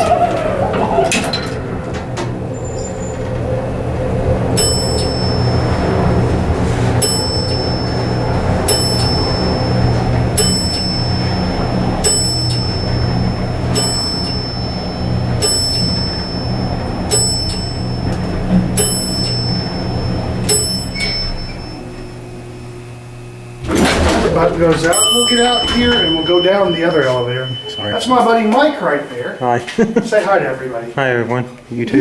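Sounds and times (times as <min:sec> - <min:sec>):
elevator hum: 0:00.0 - 0:32.0
high electronic chime: 0:25.0 - 0:29.8.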